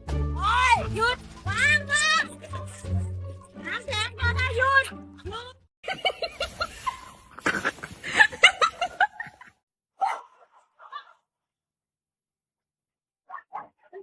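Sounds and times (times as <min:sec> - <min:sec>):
person laughing: 0:05.9 - 0:09.6.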